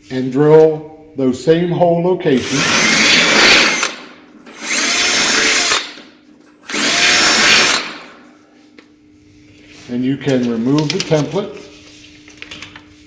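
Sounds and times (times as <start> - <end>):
electric drill drilling metal: 2.4 - 6.0, 6.6 - 8.2.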